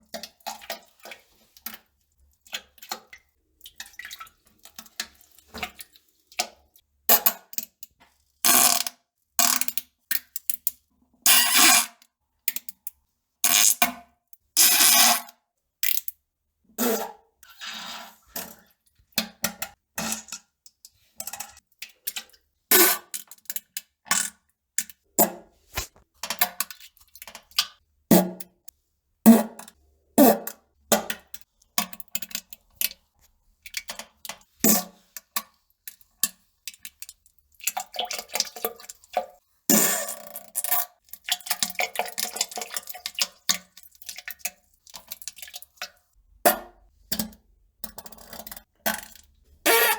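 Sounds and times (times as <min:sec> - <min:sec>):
fart sounds: 0:49.7 - 0:49.9.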